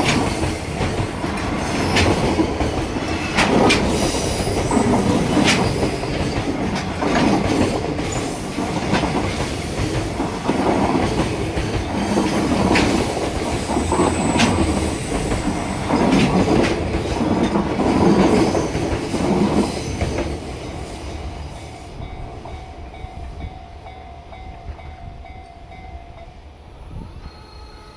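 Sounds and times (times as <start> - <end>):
train wagons clattering over rail joints: 0.0 - 21.0.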